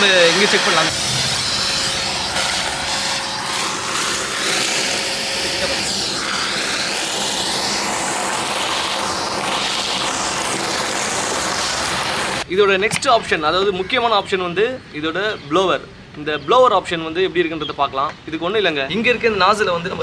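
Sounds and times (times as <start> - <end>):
vacuum cleaner running: 0.0 - 12.5.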